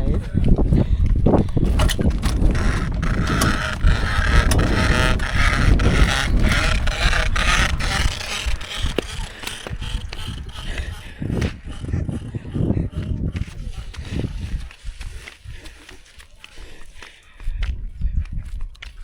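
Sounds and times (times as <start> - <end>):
bicycle freewheel ticking: 1.6 - 12.7.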